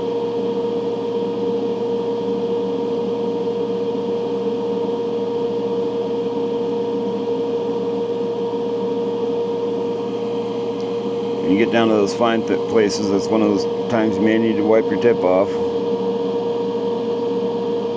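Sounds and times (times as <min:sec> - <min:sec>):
ventilation fans droning: 0:06.3 - 0:17.9.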